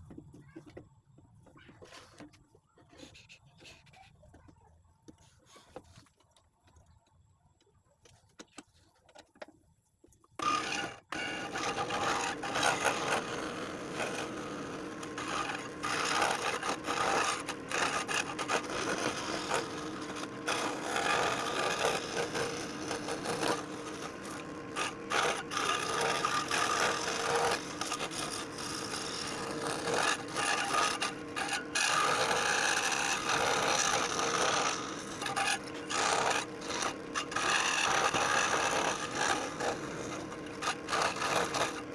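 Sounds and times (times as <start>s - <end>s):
scroll saw cutting wood: 10.4s - 41.9s.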